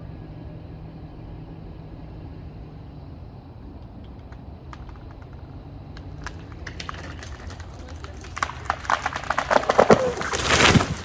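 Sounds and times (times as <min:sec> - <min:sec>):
truck engine running under load: 0:00.1 - 0:11.0
tree wood cracking: 0:03.8 - 0:11.0.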